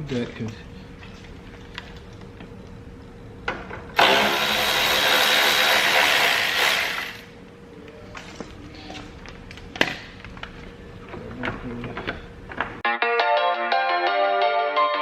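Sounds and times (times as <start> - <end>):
handheld power tool running: 4.0 - 7.3.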